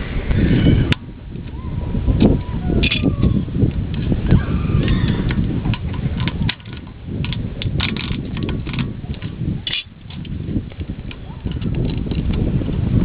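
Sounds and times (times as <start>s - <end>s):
steady low rumble: 0.0s - 13.0s
metal tools clinking and knocking: 2.8s - 3.1s, 5.7s - 12.4s.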